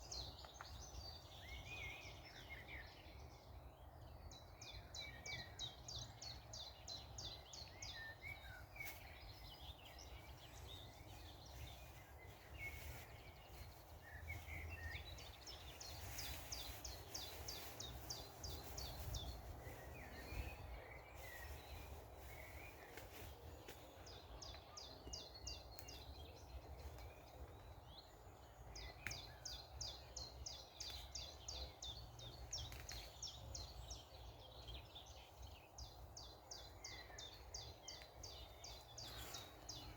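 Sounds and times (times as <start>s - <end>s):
small songbird singing: 0.0s - 39.9s.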